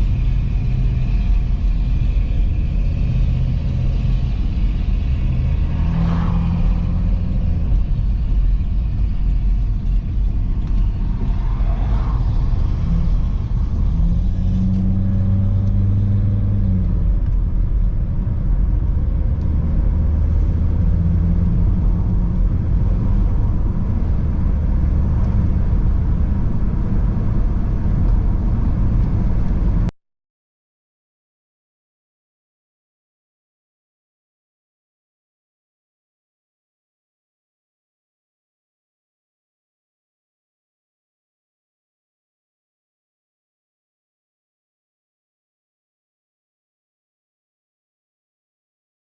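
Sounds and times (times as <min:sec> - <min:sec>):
car engine rumbling: 0:00.0 - 0:29.9
road noise: 0:00.0 - 0:29.9.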